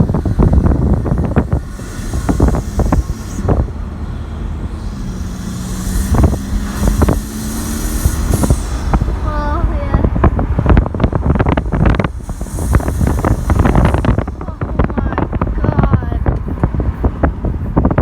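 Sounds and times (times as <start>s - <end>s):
car engine rumble from inside cabin: 0.0s - 18.0s
wind buffeting microphone: 0.0s - 18.0s.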